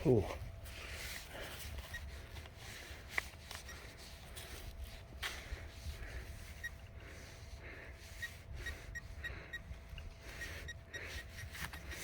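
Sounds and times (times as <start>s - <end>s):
metal detector beeps: 1.8s - 2.2s, 3.6s - 4.0s, 6.6s - 6.8s, 8.2s - 12.0s.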